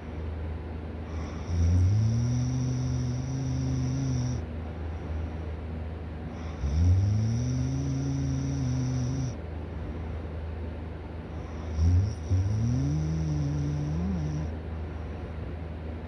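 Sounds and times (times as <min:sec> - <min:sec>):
steady low hum: 0:00.0 - 0:16.0
person snoring: 0:01.2 - 0:04.4, 0:06.5 - 0:09.4, 0:11.6 - 0:14.5.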